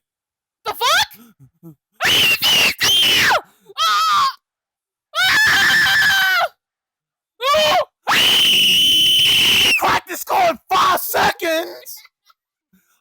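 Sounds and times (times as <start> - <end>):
high-pitched screams: 2.0 - 4.4, 5.2 - 6.5, 7.5 - 11.6.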